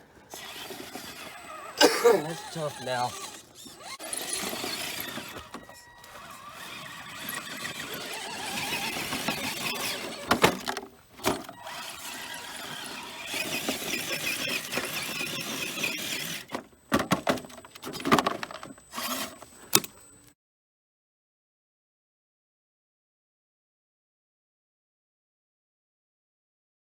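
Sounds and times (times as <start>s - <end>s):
electric motor and gears whining: 0.0s - 20.3s.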